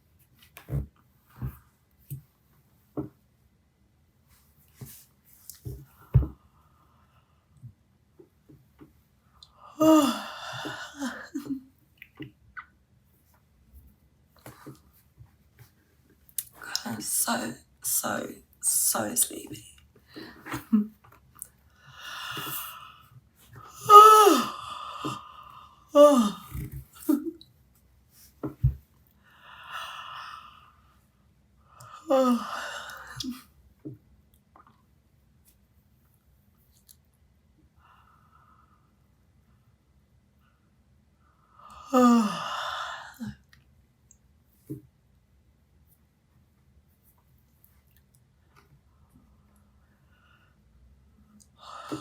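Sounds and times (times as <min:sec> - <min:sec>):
woman yawning: 0:09.7 - 0:11.6, 0:23.8 - 0:25.2, 0:26.0 - 0:27.3
breaths: 0:29.2 - 0:31.1, 0:49.8 - 0:50.7.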